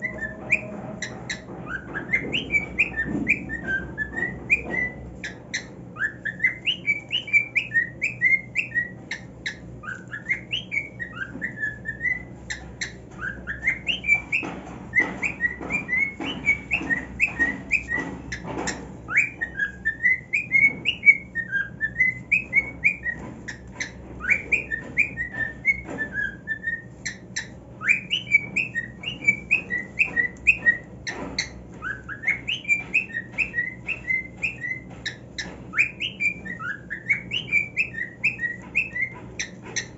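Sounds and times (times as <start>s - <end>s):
cockatiel whistling song: 0.0s - 39.9s.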